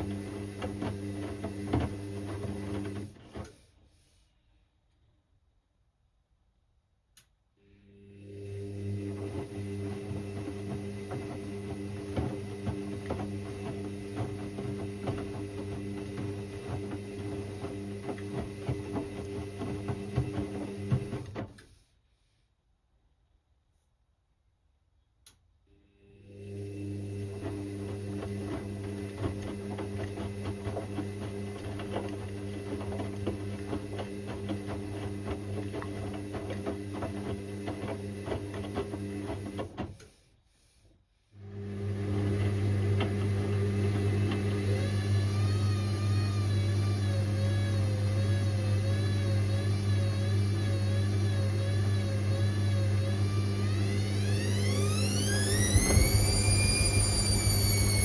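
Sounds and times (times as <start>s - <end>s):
washing machine motor hum: 0.0s - 3.5s, 7.8s - 21.6s, 26.2s - 40.1s, 41.4s - 58.0s
wavering whine: 54.0s - 58.0s.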